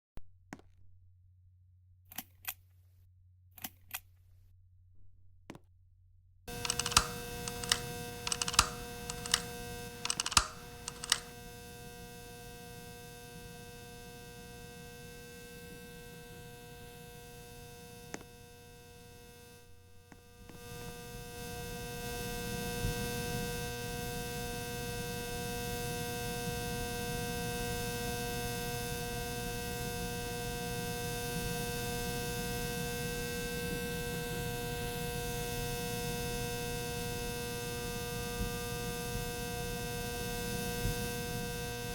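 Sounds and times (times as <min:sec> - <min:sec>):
sharp clicks: 0:06.5 - 0:11.3.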